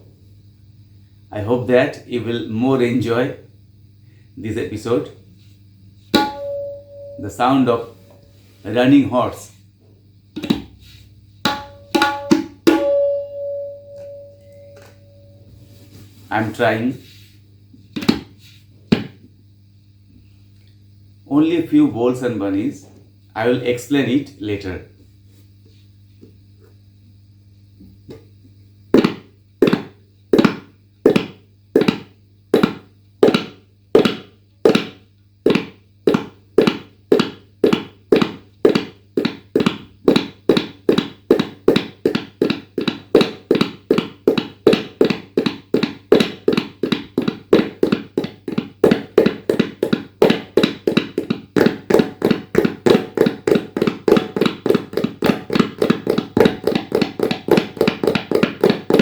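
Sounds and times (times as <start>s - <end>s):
tabla galloping rhythm: 6.2s - 7.3s, 11.5s - 13.5s, 45.7s - 59.0s.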